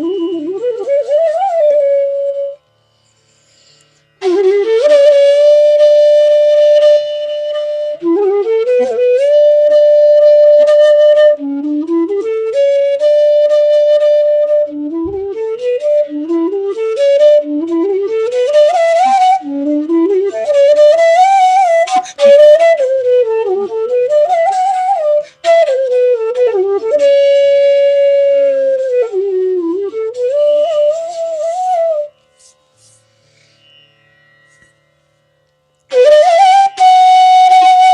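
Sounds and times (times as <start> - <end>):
bamboo flute playing: 0.0 - 33.1, 35.9 - 37.9.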